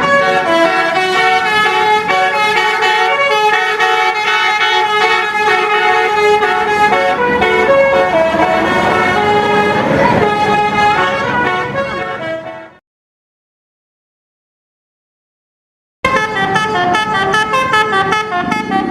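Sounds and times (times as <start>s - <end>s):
multi-trumpet air horn tune: 0.0s - 12.8s, 16.1s - 18.9s
rush of noise: 8.0s - 11.3s.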